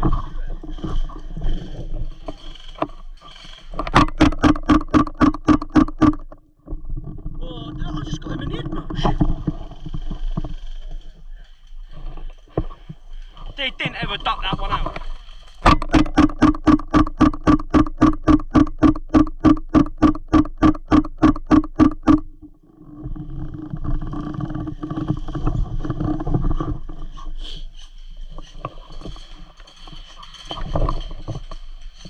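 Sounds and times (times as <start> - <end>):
airsoft gun shots: 15.6 - 22.2.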